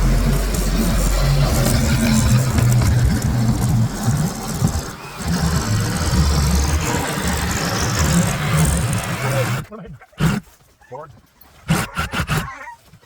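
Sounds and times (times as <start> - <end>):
engine running: 0.0 - 10.4.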